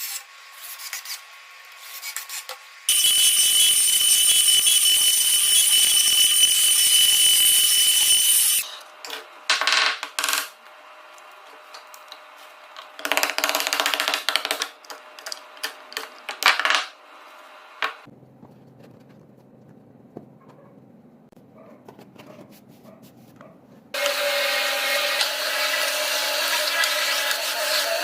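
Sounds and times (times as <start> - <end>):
power tool whining: 2.9 - 8.7, 24.0 - 28.0.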